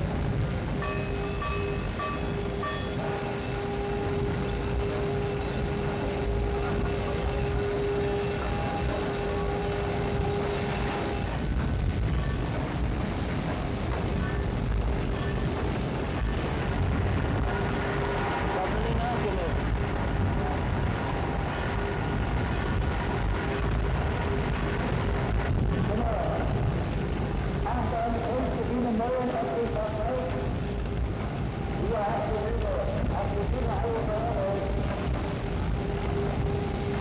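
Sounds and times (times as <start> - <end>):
held mechanical whine: 0.2 - 26.3.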